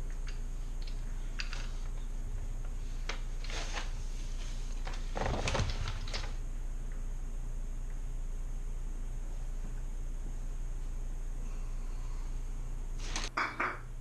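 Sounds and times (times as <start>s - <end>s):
steady low hum: 0.0s - 14.0s
knocks and clatters of rummaging: 4.9s - 6.3s.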